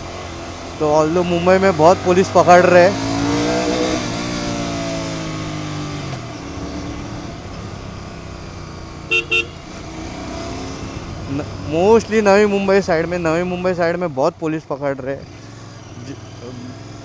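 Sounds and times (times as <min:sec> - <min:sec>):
motorcycle engine while riding: 0:00.0 - 0:17.0
road noise: 0:00.0 - 0:17.0
vehicle horn toots: 0:01.0 - 0:01.8, 0:09.0 - 0:09.9.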